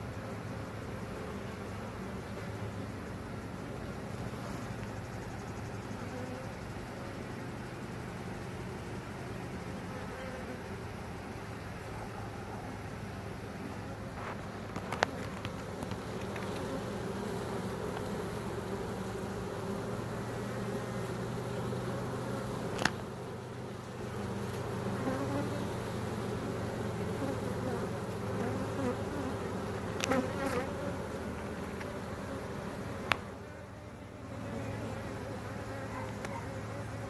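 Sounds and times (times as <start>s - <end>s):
bees buzzing: 12.6s - 37.0s.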